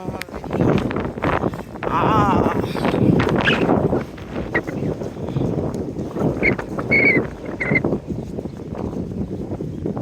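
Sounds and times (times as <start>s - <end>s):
footsteps crunching on snow: 3.0s - 10.0s.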